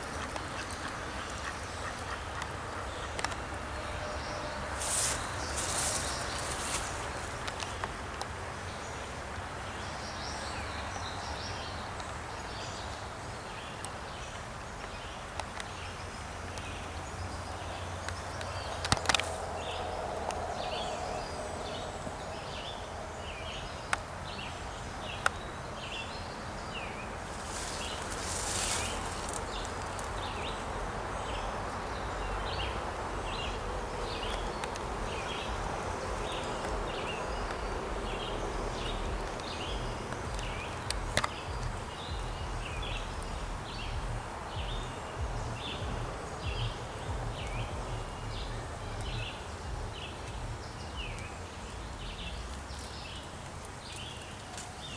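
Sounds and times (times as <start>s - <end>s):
bird chirping: 15.8s - 54.9s
low rumble: 33.2s - 52.6s.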